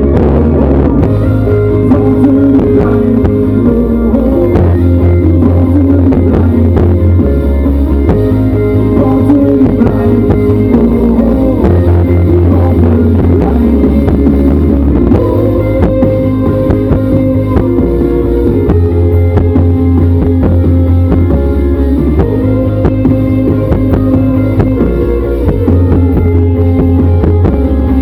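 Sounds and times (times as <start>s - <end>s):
bass long low notes: 0.0s - 28.0s
rock band playing: 0.0s - 28.0s.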